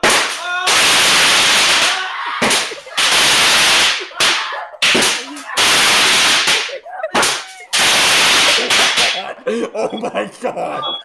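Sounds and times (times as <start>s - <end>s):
firework hissing bursts: 3.0s - 4.0s, 7.8s - 9.0s.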